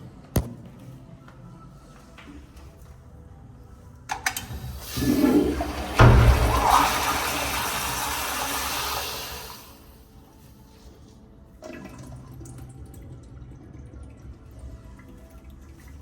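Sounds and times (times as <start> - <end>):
toilet flushing: 4.1 - 10.2, 11.6 - 16.0
water refilling: 4.2 - 10.1, 11.5 - 16.0.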